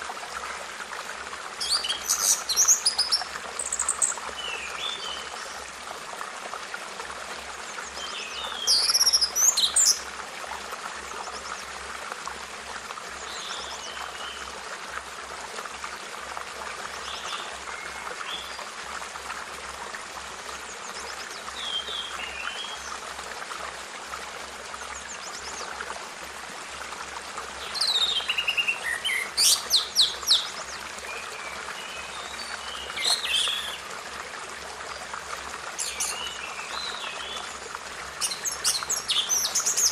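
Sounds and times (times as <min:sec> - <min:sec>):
birds chirping and calling: 0:27.7 - 0:30.6, 0:32.3 - 0:33.8, 0:38.2 - 0:39.9.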